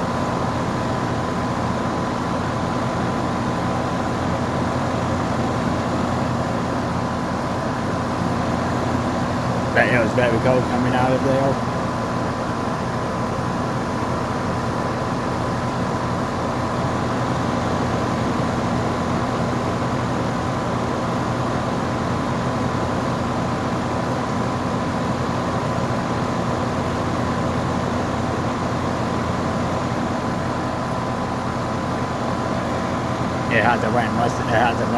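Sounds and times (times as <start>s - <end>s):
heat pump compressor humming: 0.0s - 24.7s, 29.0s - 34.9s
fan blowing air: 7.9s - 12.0s, 32.4s - 34.9s
thin steady whine: 9.1s - 12.1s, 32.5s - 34.9s.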